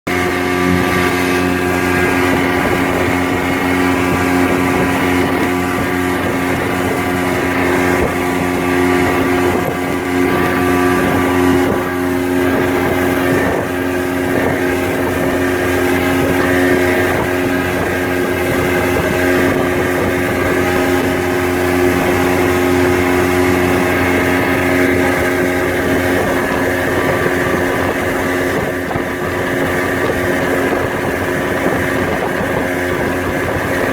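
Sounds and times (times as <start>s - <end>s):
motorboat engine humming: 0.0s - 33.9s
water rushing: 0.1s - 33.9s.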